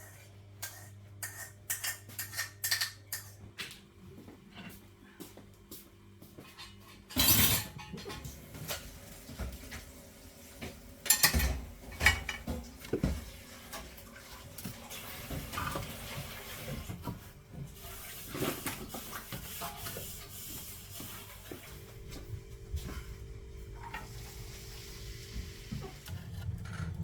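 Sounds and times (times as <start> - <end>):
dishes and cutlery clattering: 0.6 - 3.4, 6.4 - 8.8, 11.0 - 13.2.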